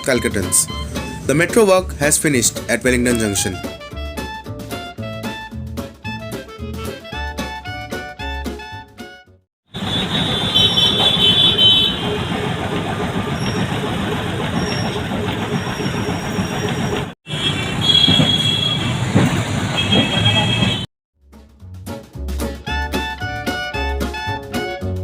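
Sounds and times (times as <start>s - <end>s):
street traffic noise: 0.0s - 5.4s, 9.7s - 20.9s
tram: 9.8s - 20.8s.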